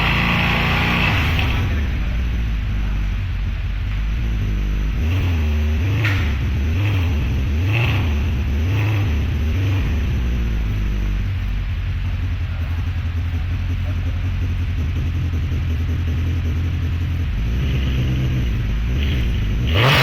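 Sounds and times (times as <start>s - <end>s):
car engine idling and revving: 0.0s - 20.0s.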